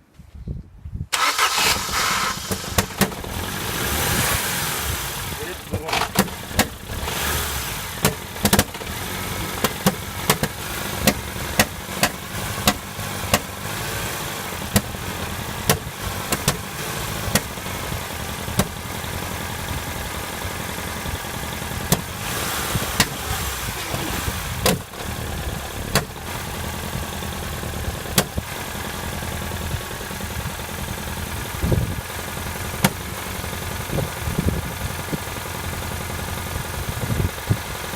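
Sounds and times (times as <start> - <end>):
car engine idling: 1.2 - 37.9
sharp engine knocks: 5.7 - 6.8, 8.0 - 8.9, 9.6 - 13.5, 14.7 - 15.0, 15.6 - 16.7, 17.3 - 17.6, 18.5 - 18.8, 23.9 - 25.0, 25.9 - 26.4, 28.1 - 28.4, 32.8 - 33.0.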